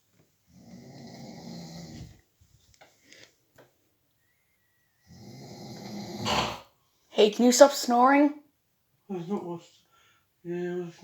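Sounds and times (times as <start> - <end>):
adult snoring: 0.5 - 2.2, 5.0 - 6.7.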